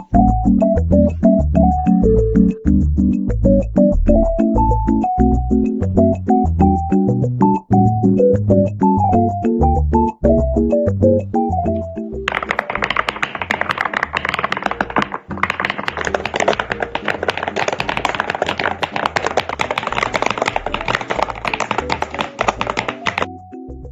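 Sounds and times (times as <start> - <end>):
background music with bass line: 0.0 - 12.4
mechanical keyboard typing: 12.3 - 23.3.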